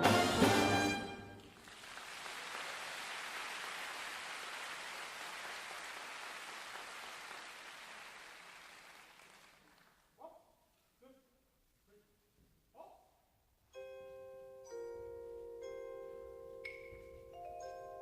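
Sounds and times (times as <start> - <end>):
audience applauding: 1.2 - 10.1.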